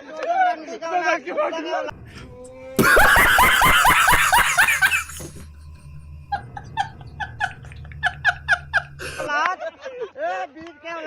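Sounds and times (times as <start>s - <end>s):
person laughing: 2.8s - 5.5s, 6.3s - 10.1s.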